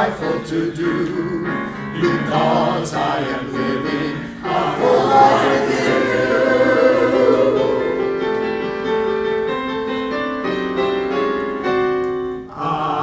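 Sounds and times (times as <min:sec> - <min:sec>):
men's chorus singing: 0:00.0 - 0:08.7, 0:12.5 - 0:13.0.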